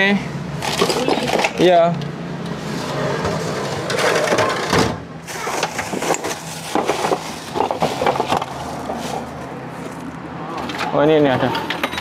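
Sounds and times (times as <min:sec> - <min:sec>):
hard parts clattering and knocking: 0:00.6 - 0:01.8, 0:03.2 - 0:09.3, 0:10.6 - 0:12.0.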